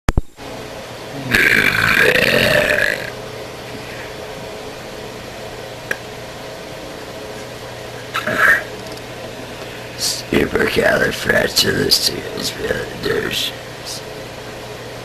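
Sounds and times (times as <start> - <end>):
woman belching: 1.2 - 3.2.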